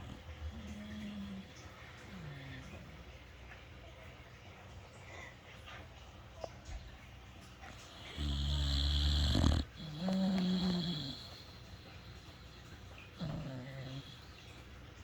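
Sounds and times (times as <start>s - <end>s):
pet snoring: 7.9s - 14.6s.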